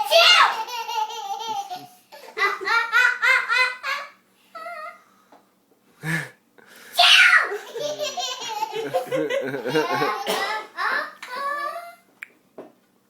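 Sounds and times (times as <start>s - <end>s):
child giggling: 0.0s - 5.0s, 7.4s - 12.0s.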